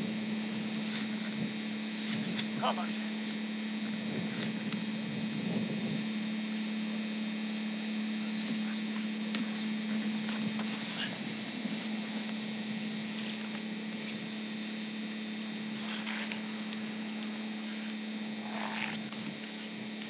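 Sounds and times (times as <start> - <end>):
camcorder tape mechanism hum: 0.0 - 20.0.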